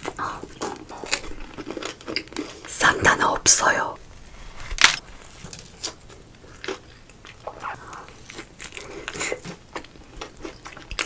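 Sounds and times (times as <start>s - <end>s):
person chewing doughnut: 0.0s - 2.7s, 5.7s - 11.0s.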